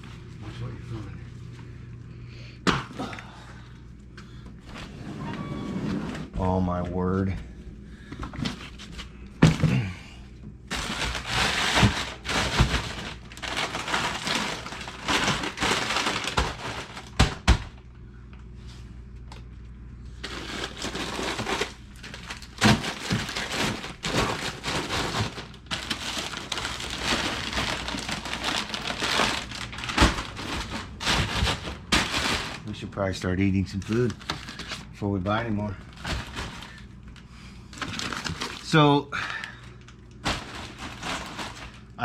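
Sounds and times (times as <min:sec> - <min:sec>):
packages knocking: 0:10.7 - 0:17.8, 0:20.3 - 0:32.8, 0:35.9 - 0:36.8, 0:40.2 - 0:41.8
plastic packaging crinkling: 0:10.7 - 0:17.8, 0:20.2 - 0:42.0.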